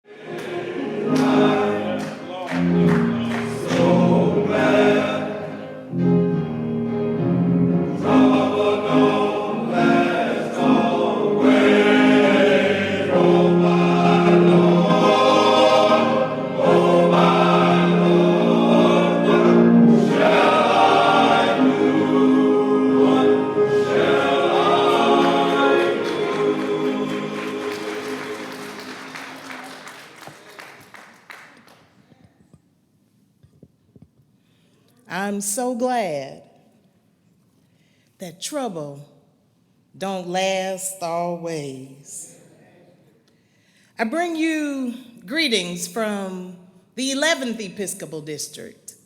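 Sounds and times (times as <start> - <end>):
choir singing gospel: 0.0 - 30.3.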